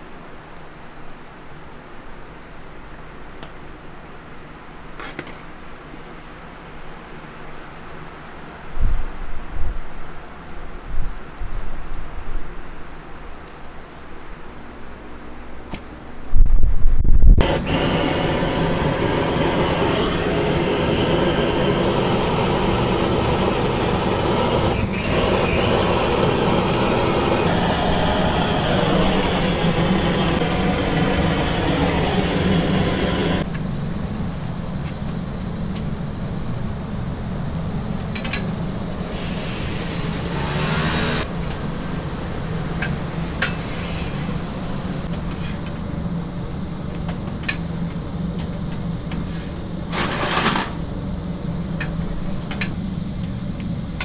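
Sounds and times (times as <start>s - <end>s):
loud rumbling noise: 17.0s - 34.7s, 36.0s - 46.9s
short hissing bursts: 17.4s - 33.4s, 38.5s - 45.6s
low machine hum: 17.4s - 54.0s.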